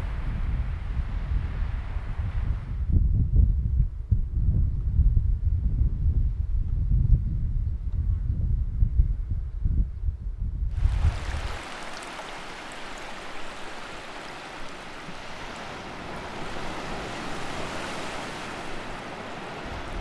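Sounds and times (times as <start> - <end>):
low wind rumble on microphone: 0.0 - 20.0
sea waves washing: 10.8 - 20.0.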